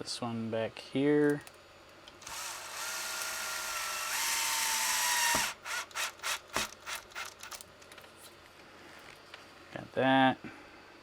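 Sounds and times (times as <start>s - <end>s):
power screwdriver motor whine: 2.2s - 7.6s.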